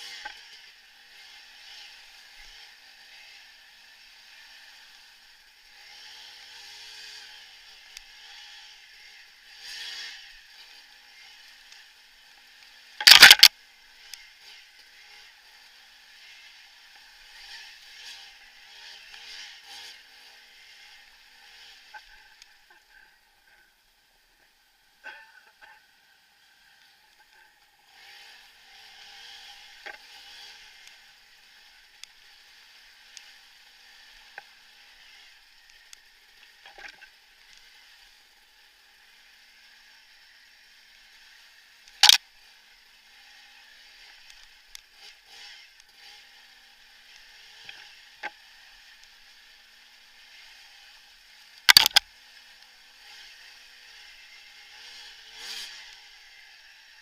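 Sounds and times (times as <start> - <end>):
bicycle tyres and drivetrain hissing: 0.0 - 57.0
small clicks: 11.4 - 14.3, 29.7 - 38.1, 41.8 - 42.2, 44.0 - 46.0, 46.9 - 50.5, 51.4 - 53.3.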